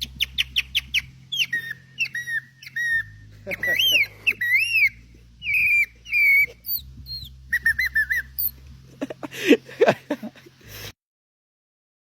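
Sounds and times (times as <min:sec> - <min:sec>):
man whistling bird-like chirps: 0:00.0 - 0:08.6
low squeaky sounds and clicks: 0:00.0 - 0:08.8.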